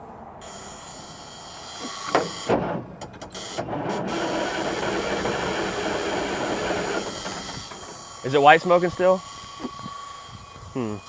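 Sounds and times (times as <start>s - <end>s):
diesel truck engine cranking: 0.5s - 10.6s
loud knocks: 2.1s - 8.1s.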